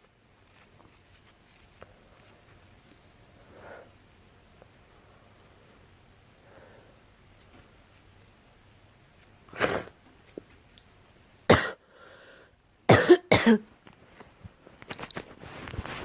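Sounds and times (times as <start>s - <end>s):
girl coughing: 11.5s - 11.8s, 12.9s - 13.7s.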